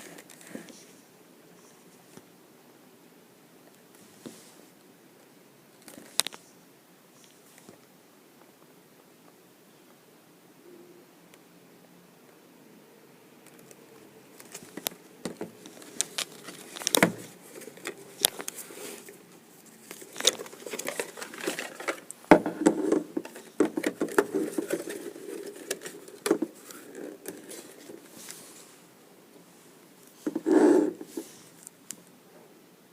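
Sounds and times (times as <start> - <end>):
packaging clicks and rustles: 13.5 - 28.7.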